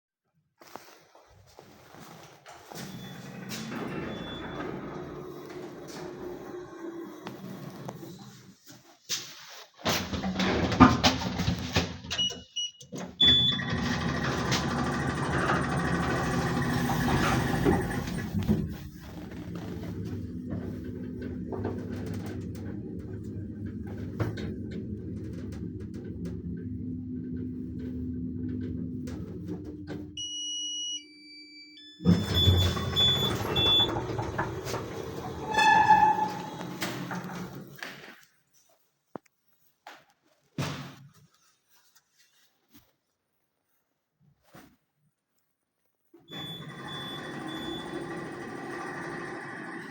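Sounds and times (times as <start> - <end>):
elevator running with squeaking: 2.7 - 7.8, 13.2 - 30.3, 31.9 - 37.7, 46.3 - 49.9.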